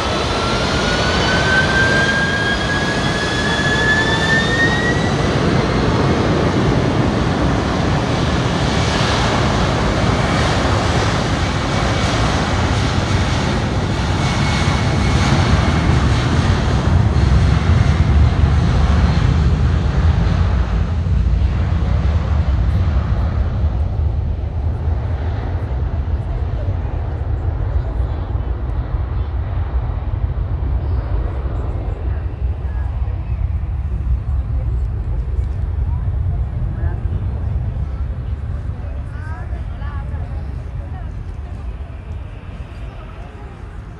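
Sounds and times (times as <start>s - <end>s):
jet engines spooling up: 0.0s - 23.2s.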